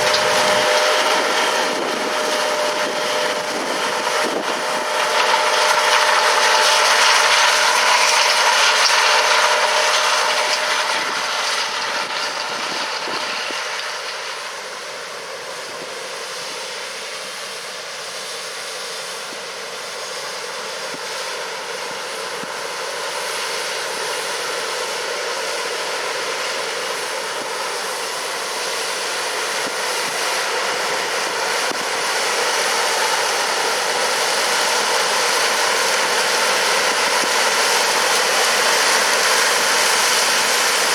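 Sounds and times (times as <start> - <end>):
combine harvester running: 0.0 - 40.9.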